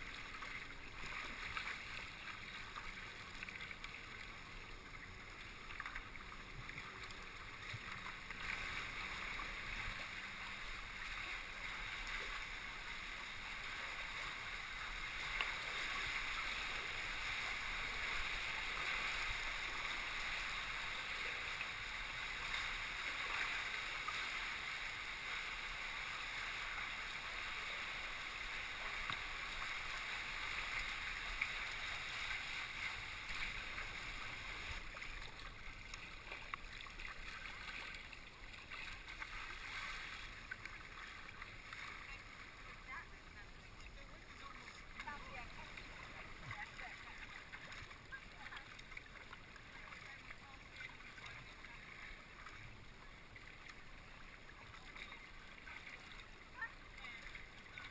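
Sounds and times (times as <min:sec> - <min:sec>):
water rushing around kayak: 0:00.0 - 0:57.9.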